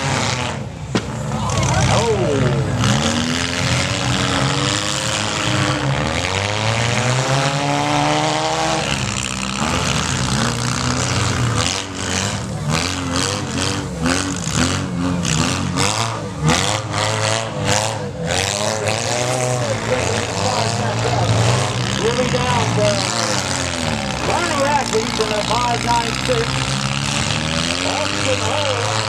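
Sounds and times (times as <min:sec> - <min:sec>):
car engines revving: 0:00.0 - 0:29.0
short sharp bangs: 0:00.9 - 0:01.4.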